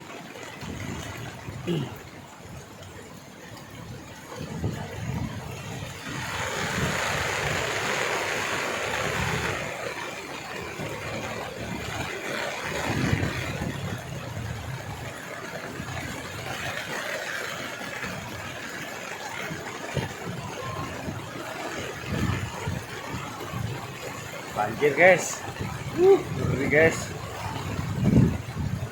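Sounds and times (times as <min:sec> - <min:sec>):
heavy rain: 0:00.0 - 0:28.9
water rushing on flooded street: 0:00.0 - 0:28.9
vehicle engine: 0:05.1 - 0:17.0.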